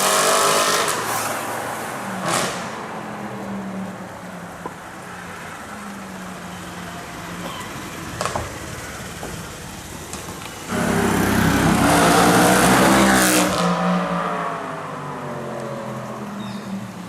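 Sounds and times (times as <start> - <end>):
exhaust crack: 7.7 - 13.8
car engine revving: 10.6 - 16.3.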